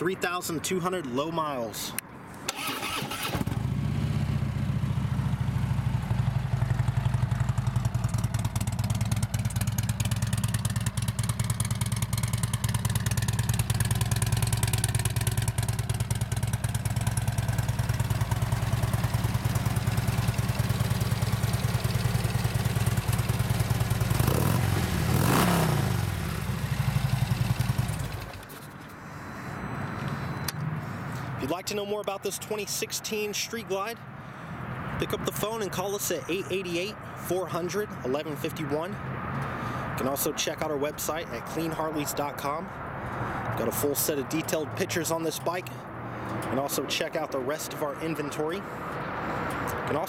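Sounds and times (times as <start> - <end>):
motorcycle engine idling and revving: 2.6 - 29.0.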